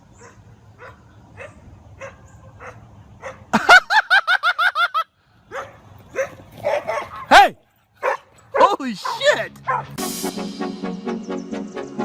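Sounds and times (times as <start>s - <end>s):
dog barking high yaps: 0.2s - 3.5s, 5.5s - 10.0s.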